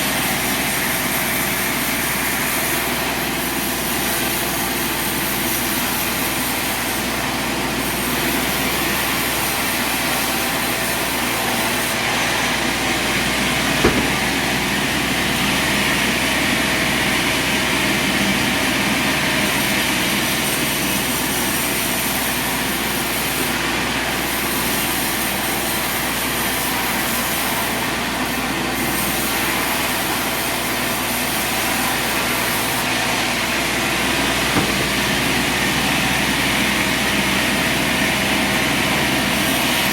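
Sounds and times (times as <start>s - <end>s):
sawmill running: 0.0s - 39.9s
sharp knock: 13.8s - 14.6s, 34.5s - 35.8s.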